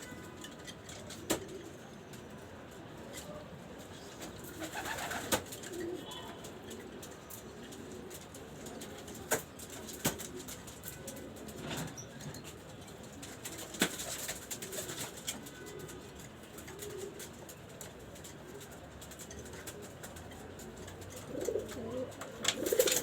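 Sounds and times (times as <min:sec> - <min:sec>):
pigeons cooing: 0:13.8 - 0:17.6, 0:19.5 - 0:23.0.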